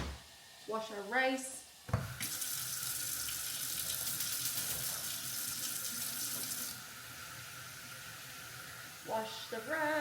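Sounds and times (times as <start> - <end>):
tap water splashing into a pot: 1.8 - 6.8.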